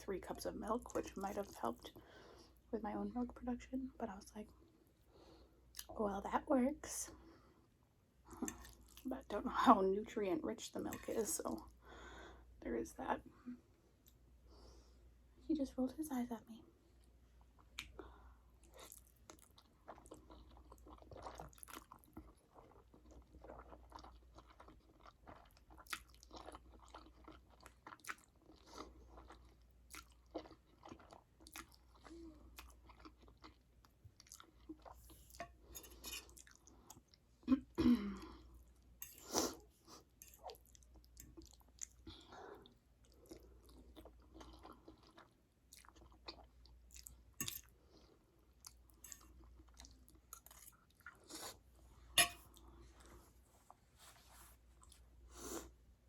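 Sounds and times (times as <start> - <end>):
person chewing noodles: 18.6 - 37.2, 38.4 - 53.2.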